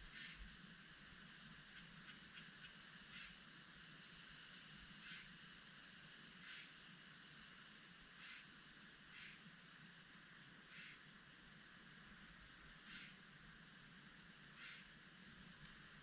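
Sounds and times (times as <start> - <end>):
faint short bird calls: 0.0 - 0.5, 1.7 - 3.4, 5.0 - 5.3, 6.4 - 6.8, 7.5 - 8.5, 9.1 - 9.4, 10.7 - 11.2, 12.8 - 13.2, 14.6 - 14.9
steady hiss: 0.0 - 16.0.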